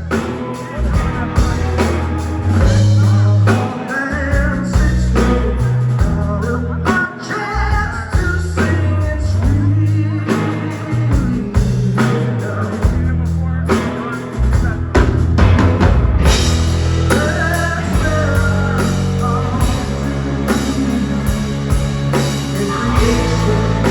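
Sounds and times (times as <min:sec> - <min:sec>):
loud bass notes: 0:00.0 - 0:03.6, 0:14.4 - 0:23.9
electric guitar: 0:00.0 - 0:23.9.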